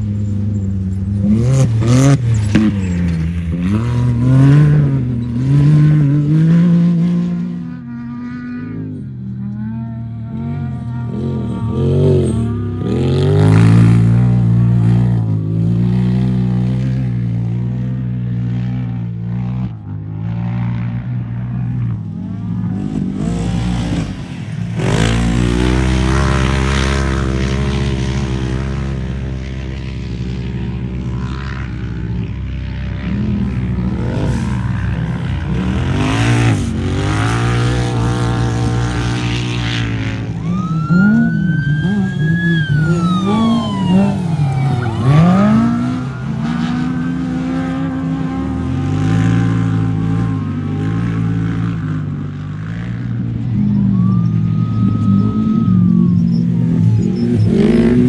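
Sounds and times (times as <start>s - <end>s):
race vehicle engines revving: 0.0s - 58.0s
rising whine: 10.2s - 14.6s, 39.5s - 48.8s, 53.4s - 58.0s.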